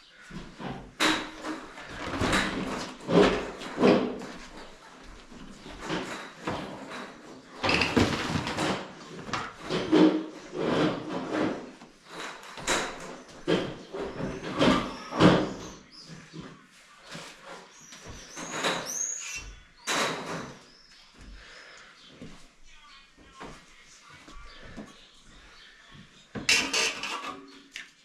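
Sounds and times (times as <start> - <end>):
shower parts knocking and rattling: 5.8 - 15.4, 26.4 - 27.6.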